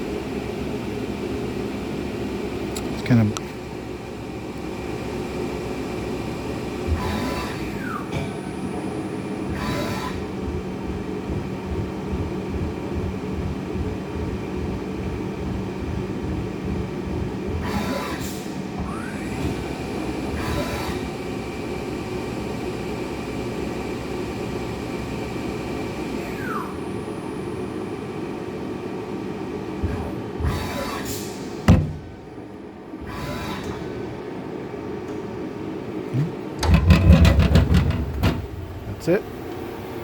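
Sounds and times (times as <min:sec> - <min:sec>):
lathe and coolant rush and hum: 0:00.0 - 0:34.2
machine clunks: 0:31.6 - 0:32.2, 0:36.1 - 0:39.2.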